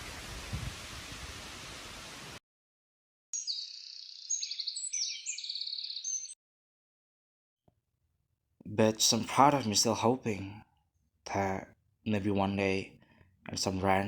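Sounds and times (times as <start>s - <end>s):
songbird chirping: 3.4s - 6.4s.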